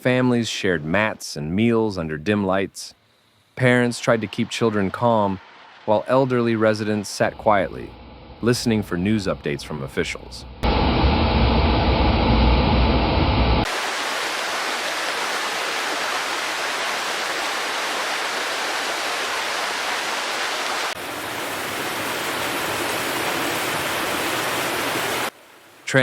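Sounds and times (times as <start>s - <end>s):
rushing water: 3.6s - 7.8s, 13.6s - 26.0s
heavy rain: 4.2s - 6.8s, 13.6s - 25.4s.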